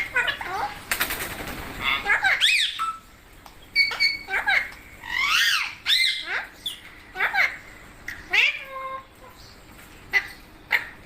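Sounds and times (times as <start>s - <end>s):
parrot squawking: 0.0s - 0.8s, 1.8s - 3.0s, 3.8s - 9.4s, 10.1s - 11.0s.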